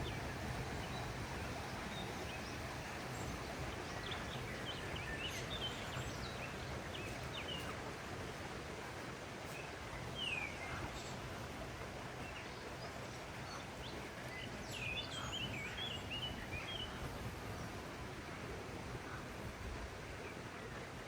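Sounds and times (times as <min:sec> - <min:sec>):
small birds chirping: 0:00.0 - 0:06.3
outdoor background hiss: 0:00.0 - 0:21.0.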